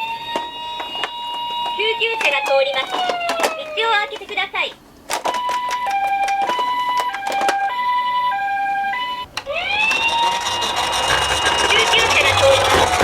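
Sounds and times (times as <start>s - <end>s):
toy siren rising wail: 0.0s - 4.1s, 5.5s - 13.0s
plastic clicks: 5.1s - 7.7s
toy siren hi-lo pattern: 5.5s - 13.0s.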